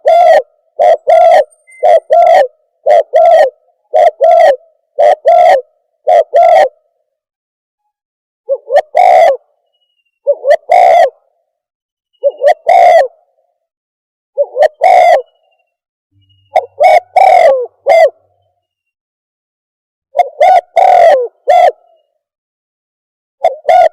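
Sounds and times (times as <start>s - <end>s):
dove cooing: 0.0s - 6.8s, 8.5s - 9.5s, 10.2s - 11.4s, 12.2s - 13.4s, 14.4s - 15.4s, 16.5s - 18.2s, 20.1s - 22.0s, 23.4s - 23.9s.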